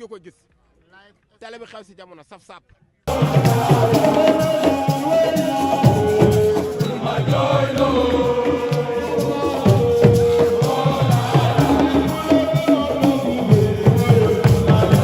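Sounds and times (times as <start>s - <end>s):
chant-like singing: 3.1s - 15.0s
drums: 3.1s - 15.0s
shakers: 3.1s - 15.0s.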